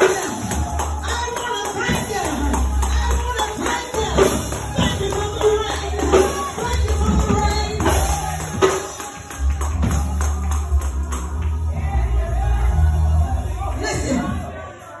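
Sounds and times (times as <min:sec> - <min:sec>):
church praise music: 0:00.0 - 0:15.0
sharp rhythmic percussion: 0:00.0 - 0:15.0
deep bass line: 0:02.2 - 0:08.7, 0:09.4 - 0:14.6.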